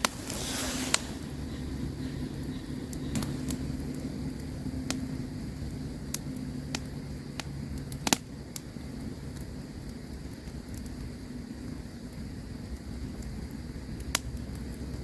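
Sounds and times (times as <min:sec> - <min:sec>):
low drone: 0:00.0 - 0:07.7
campfire crackling and popping: 0:00.0 - 0:15.0.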